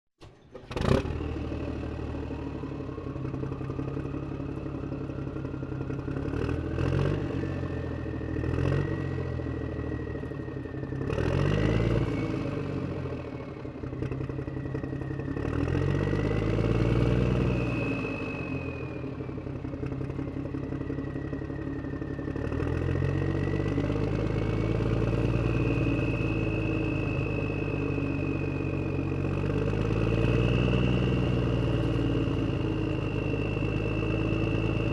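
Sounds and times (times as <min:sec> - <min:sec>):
engine starting and revving: 0:00.2 - 0:02.9, 0:10.9 - 0:13.6.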